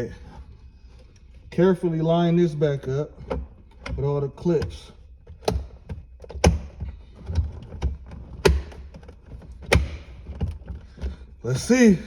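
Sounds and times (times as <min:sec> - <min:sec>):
plastic clips snapping into place: 0:07.8 - 0:10.6.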